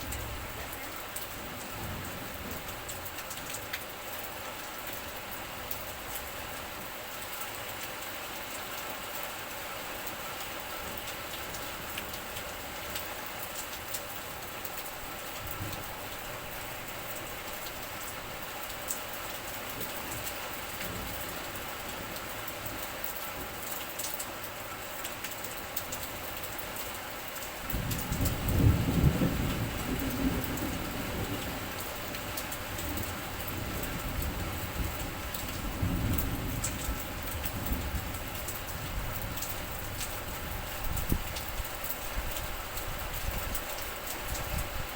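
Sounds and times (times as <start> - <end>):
raindrops ticking nearby: 0.0 - 44.9
steady rain hiss: 0.0 - 44.9.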